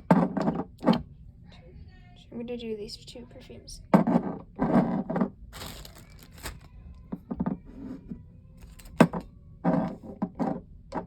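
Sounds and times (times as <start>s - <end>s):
clicks and knocks of small items: 5.1s - 7.3s, 8.6s - 9.3s
rustle of items: 5.5s - 6.8s.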